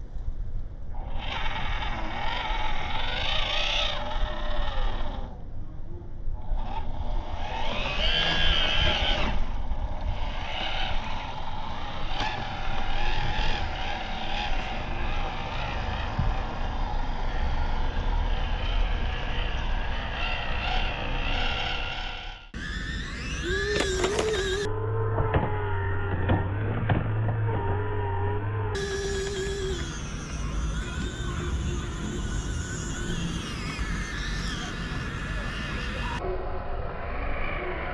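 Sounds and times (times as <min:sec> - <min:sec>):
toy car motor whining: 0:01.1 - 0:05.3, 0:06.5 - 0:24.7, 0:28.8 - 0:36.2.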